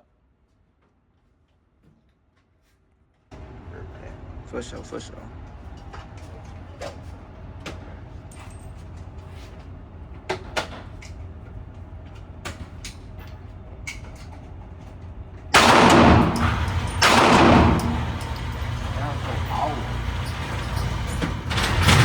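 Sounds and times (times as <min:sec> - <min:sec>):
low steady rumble: 0:11.0 - 0:22.0
gunshots: 0:15.6 - 0:19.3
loud bursts of noise: 0:15.6 - 0:22.0.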